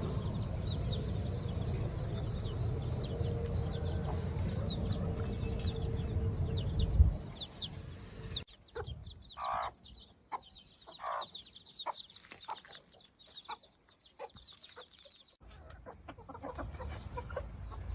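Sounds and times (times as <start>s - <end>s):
low rumble: 0.0s - 8.5s
chicks peeping: 0.1s - 17.9s
chickens clucking: 8.4s - 17.9s.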